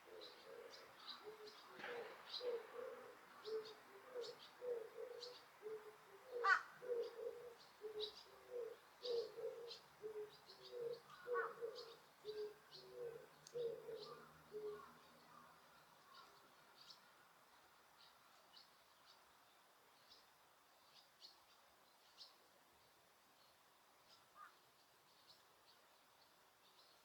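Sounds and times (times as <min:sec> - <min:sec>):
pigeons cooing: 0:00.0 - 0:15.0.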